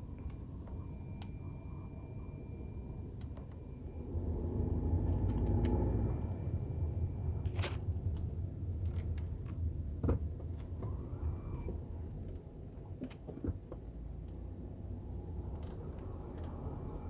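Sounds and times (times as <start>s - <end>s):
faint high beep: 0.0s - 5.2s
car low rumble: 0.0s - 17.0s.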